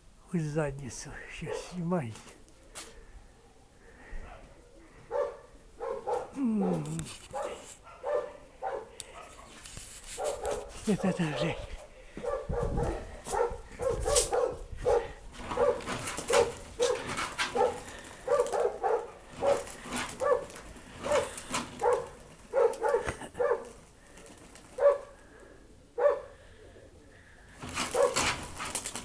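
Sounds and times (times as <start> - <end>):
dog barking: 4.2 - 23.8, 24.7 - 25.2, 26.0 - 26.4, 27.6 - 28.5.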